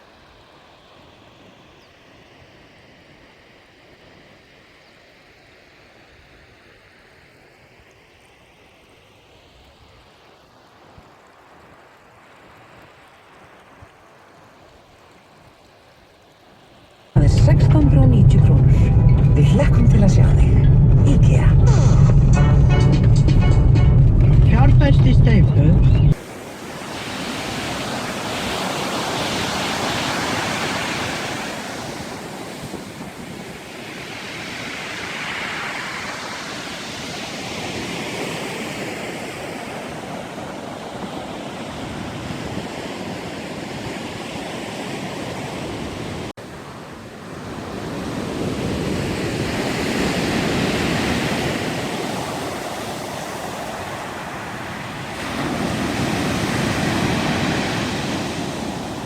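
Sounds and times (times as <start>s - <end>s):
surf breaking on shore: 17.2s - 59.0s.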